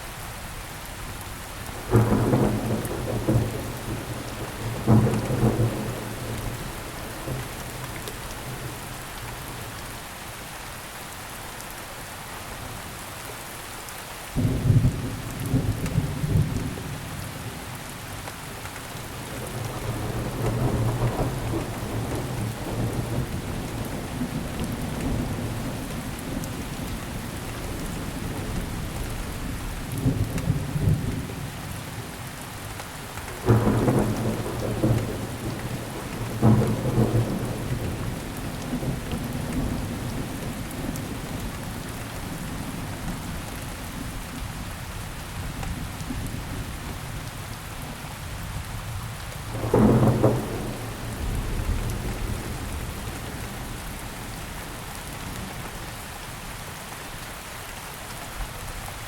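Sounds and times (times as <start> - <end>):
steady rain: 0.0 - 59.0
rolling thunder: 1.9 - 8.8, 19.2 - 31.4, 33.3 - 42.8, 49.5 - 55.5
loud thunderclap: 33.4 - 41.2, 49.5 - 54.0.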